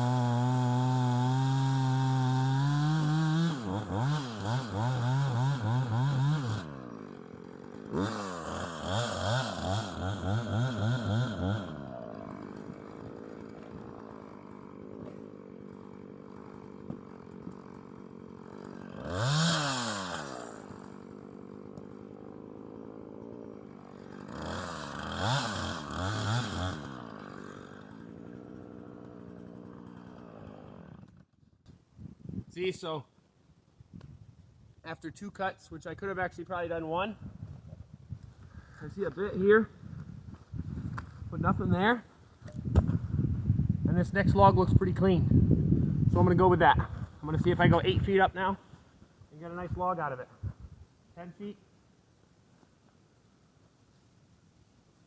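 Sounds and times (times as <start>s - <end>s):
chainsaw revving and idling: 0.0s - 31.4s, 38.4s - 50.3s.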